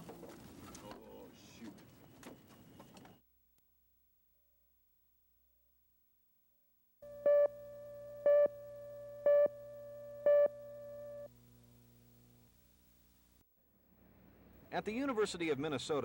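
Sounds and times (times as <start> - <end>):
steady electronic hum: 7.0 - 15.2.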